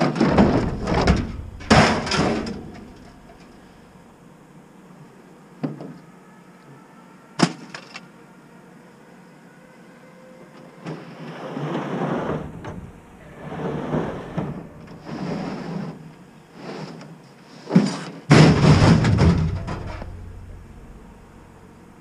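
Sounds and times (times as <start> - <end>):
metal scraping and clattering: 0.0 - 3.7, 12.0 - 16.0, 18.3 - 21.4
scrap metal clanking: 0.0 - 3.8, 12.3 - 16.0, 17.8 - 21.3.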